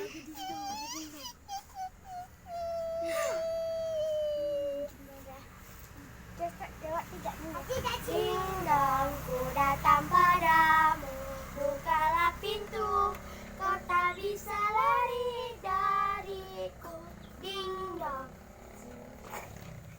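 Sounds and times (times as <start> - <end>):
child singing: 7.3 - 19.0.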